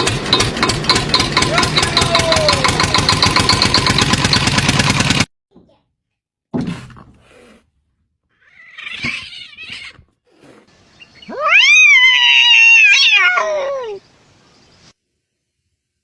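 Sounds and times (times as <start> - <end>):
cat yowling: 8.4 - 10.0, 11.2 - 14.0.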